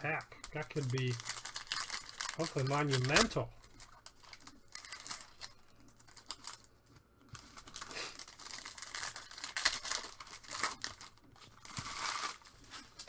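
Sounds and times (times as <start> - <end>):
cards being handled clicking: 0.0 - 4.2
foil wrappers crinkling: 0.0 - 13.0.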